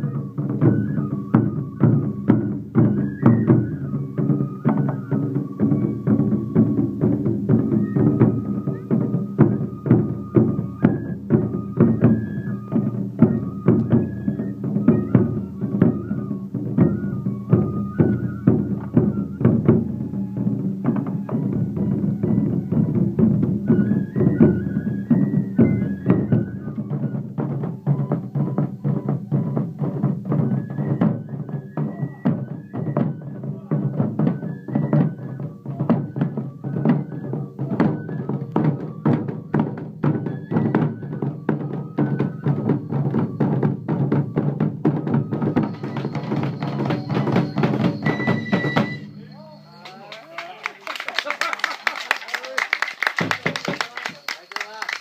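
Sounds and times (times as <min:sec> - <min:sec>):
fast drum strokes: 0:00.0 - 0:50.5, 0:53.0 - 0:55.0.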